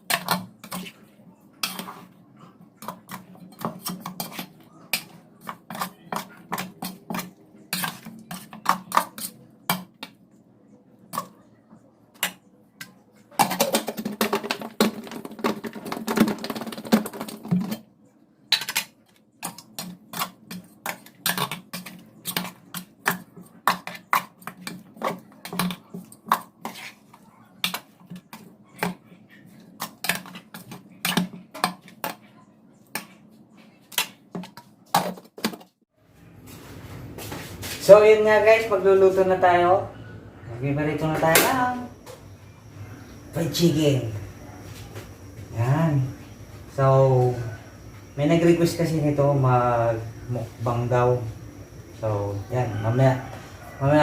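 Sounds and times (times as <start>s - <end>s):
kitchenware clattering: 0.0s - 10.2s, 12.1s - 17.9s, 18.5s - 29.1s, 29.7s - 35.7s.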